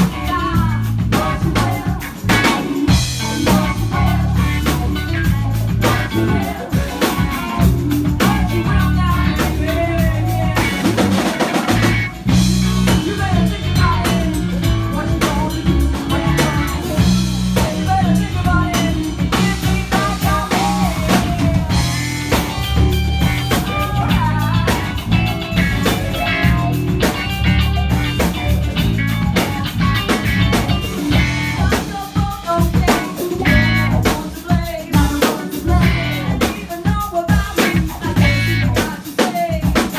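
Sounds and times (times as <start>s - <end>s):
rock band playing live: 0.0s - 39.9s.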